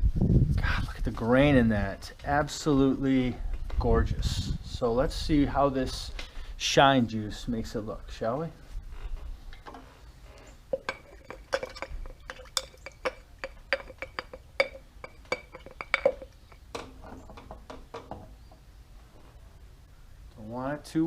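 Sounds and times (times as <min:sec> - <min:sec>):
hard container clinking: 0:10.7 - 0:17.2.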